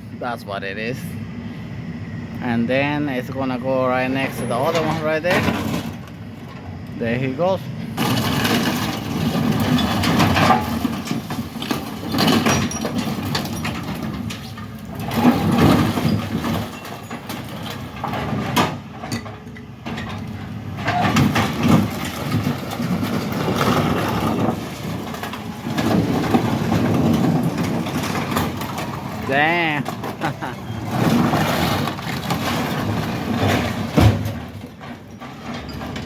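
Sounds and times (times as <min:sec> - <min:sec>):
diesel machinery engine under load: 0:00.0 - 0:36.0
sheet metal crunching and creaking: 0:08.0 - 0:36.0.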